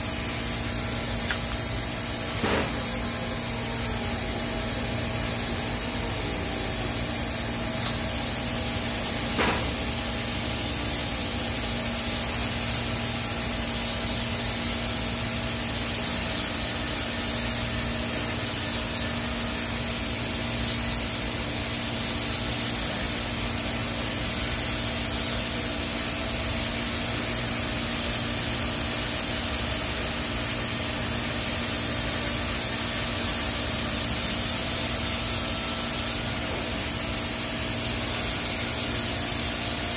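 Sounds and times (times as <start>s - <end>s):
welding arc hissing: 0.0s - 39.9s.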